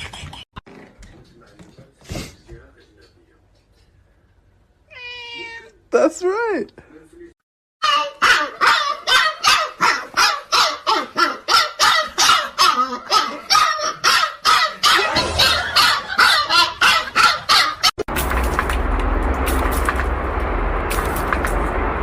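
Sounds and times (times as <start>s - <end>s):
dog barking: 7.8s - 17.8s
steady noise: 15.0s - 16.3s.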